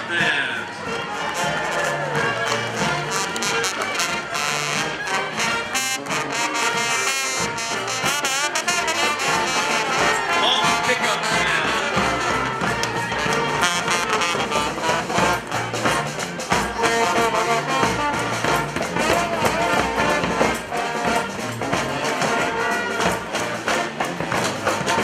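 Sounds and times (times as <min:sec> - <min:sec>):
brass band horns: 0:00.0 - 0:25.0
drums with steady beat: 0:00.0 - 0:25.0.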